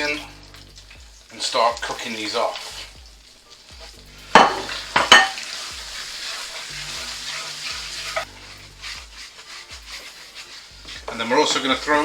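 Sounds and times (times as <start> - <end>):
spices sizzling in hot oil: 0.0 - 12.0
sharp knocks against pan: 4.4 - 5.4.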